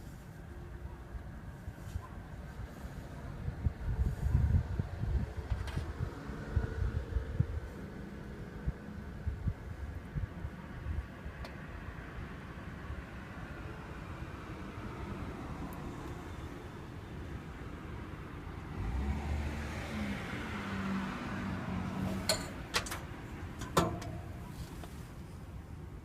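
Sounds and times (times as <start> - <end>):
motor vehicle passing: 18.7 - 24.8
sharp clicks or knocks: 22.2 - 24.4.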